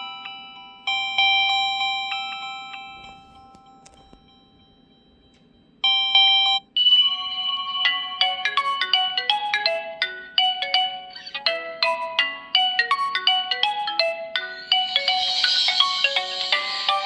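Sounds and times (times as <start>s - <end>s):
ringtone melody: 0.0s - 17.0s
bright chord: 8.2s - 17.0s.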